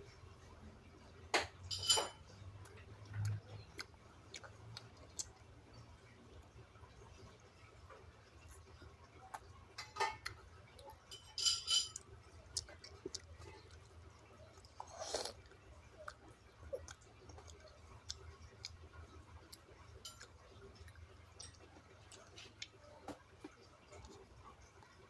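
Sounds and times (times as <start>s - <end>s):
crunchy chewing: 12.0s - 25.0s.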